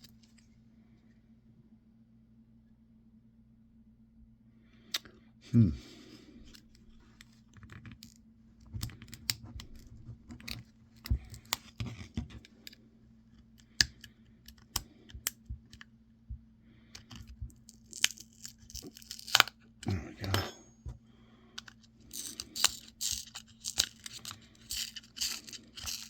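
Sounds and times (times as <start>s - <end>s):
small clicks of phone parts: 13.4s - 15.9s, 21.6s - 26.0s.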